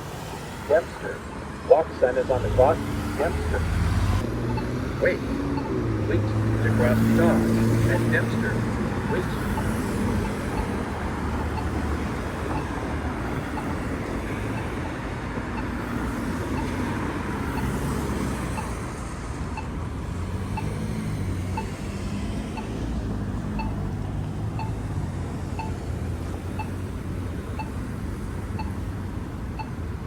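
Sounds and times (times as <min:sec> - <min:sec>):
crosswalk locator tone ticking: 0:00.0 - 0:30.0
road traffic: 0:00.0 - 0:30.0.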